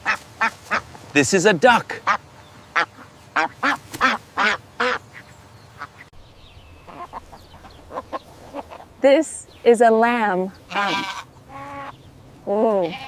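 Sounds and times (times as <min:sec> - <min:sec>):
duck quacking: 0:02.0 - 0:06.1, 0:06.9 - 0:08.9, 0:10.7 - 0:12.0.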